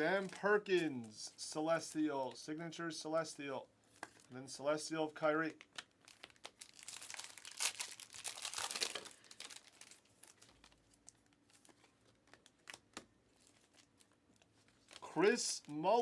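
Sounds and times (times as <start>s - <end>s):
wrapper crinkling: 5.5s - 15.8s
cards clicking and tapping: 12.3s - 13.1s.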